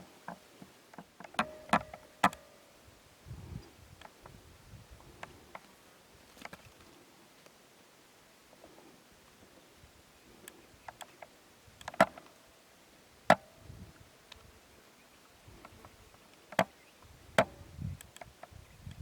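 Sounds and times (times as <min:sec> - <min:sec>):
brief metallic ring: 0:01.4 - 0:02.6.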